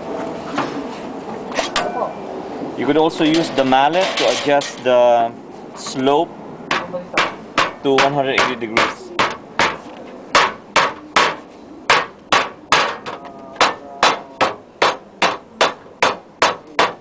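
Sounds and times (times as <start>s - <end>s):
mallet hammering metal roof panel: 6.7s - 17.0s.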